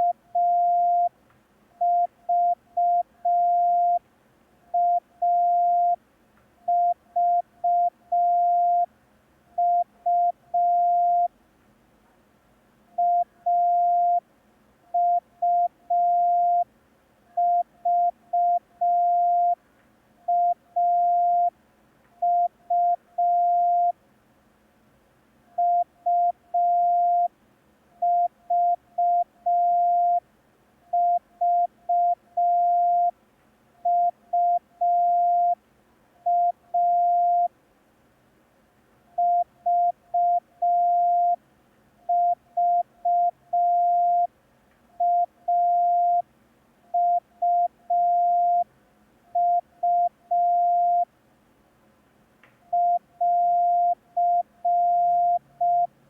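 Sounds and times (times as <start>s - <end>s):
morse code tone: 0.0s - 1.1s, 1.8s - 4.0s, 4.8s - 6.0s, 9.6s - 11.3s, 22.2s - 23.9s, 25.6s - 27.3s, 28.0s - 30.2s, 30.9s - 33.1s, 33.8s - 35.6s, 36.3s - 37.5s, 39.2s - 41.4s, 42.1s - 44.3s, 45.0s - 46.2s, 46.9s - 48.6s, 49.4s - 51.1s, 52.7s - 55.9s.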